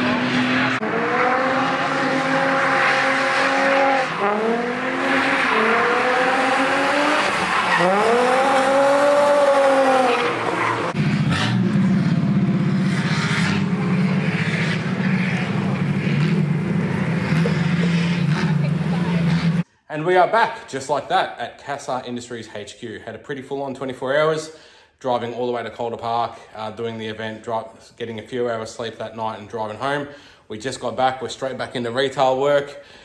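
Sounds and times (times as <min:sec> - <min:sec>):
car engine revving: 0:00.0 - 0:19.6
tyres skidding and squealing: 0:00.0 - 0:19.7.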